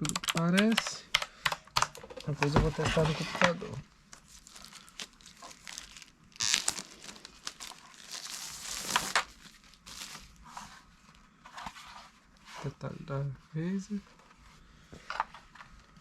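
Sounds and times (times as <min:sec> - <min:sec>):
packaging crinkling: 0:04.1 - 0:10.5.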